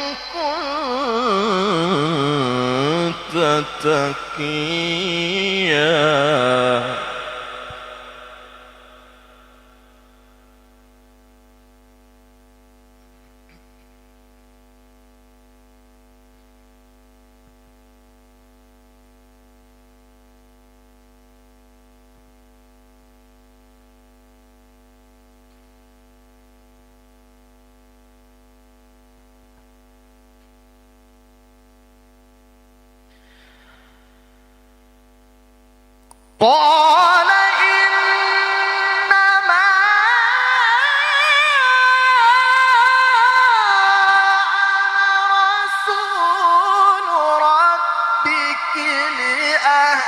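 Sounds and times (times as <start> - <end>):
person reciting loudly: 0.0 - 9.8, 36.1 - 50.0
electrical mains hum: 0.0 - 50.0.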